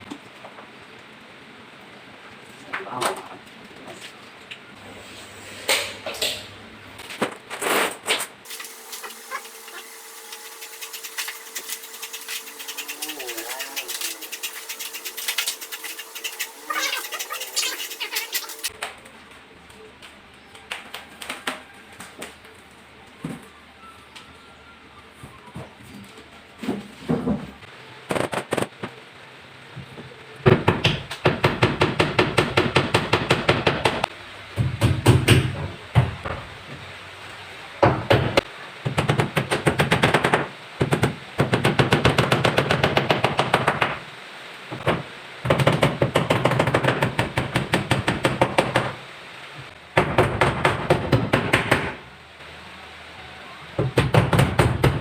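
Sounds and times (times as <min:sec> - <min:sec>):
hand tool scraping board: 0:08.5 - 0:18.7.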